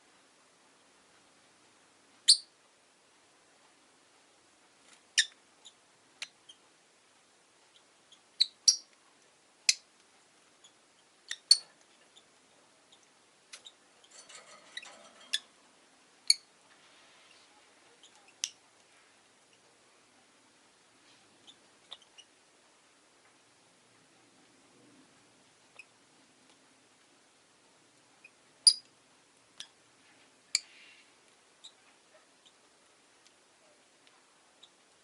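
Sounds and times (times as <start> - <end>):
soft bird clicks and chatter: 4.8 - 6.7, 7.7 - 12.3, 12.9 - 15.5, 17.9 - 19.7, 21.4 - 22.3
lovebirds chirping: 7.7 - 8.9, 28.2 - 28.9.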